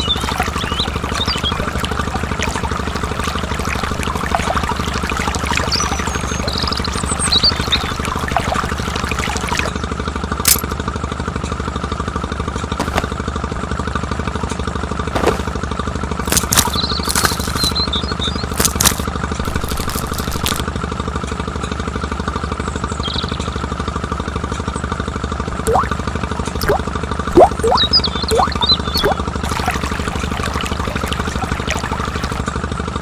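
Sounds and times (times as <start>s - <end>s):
small motor buzzing rattle: 16.2s - 17.8s, 18.4s - 20.7s.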